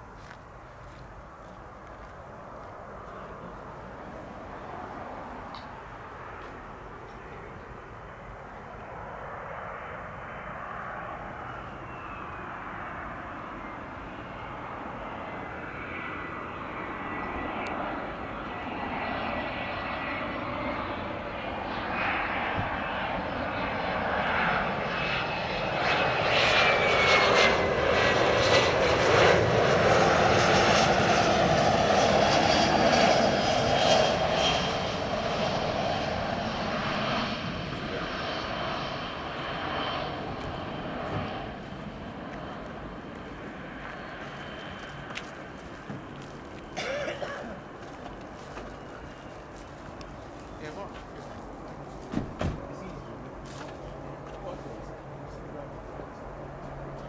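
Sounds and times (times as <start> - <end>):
jet engines on landing approach: 0.0 - 57.0.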